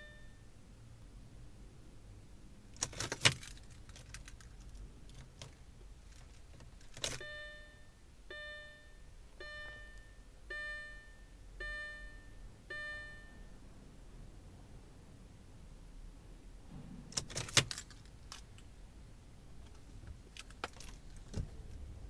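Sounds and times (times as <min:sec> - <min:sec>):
car warning chime: 0:00.0 - 0:00.5, 0:07.1 - 0:13.6.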